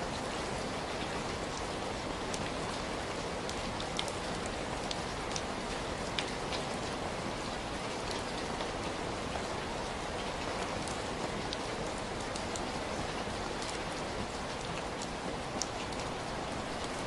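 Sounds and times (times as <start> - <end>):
heavy rain falling: 0.0 - 17.0
raindrops ticking: 10.8 - 17.0.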